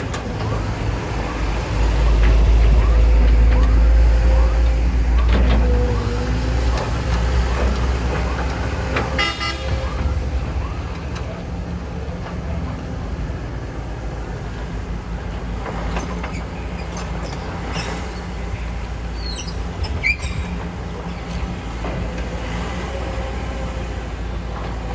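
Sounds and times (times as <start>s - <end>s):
diesel engines rumbling: 0.0s - 24.9s
vehicle horn toot: 9.1s - 10.0s
faint high squeaks: 16.3s - 18.3s, 18.9s - 20.8s.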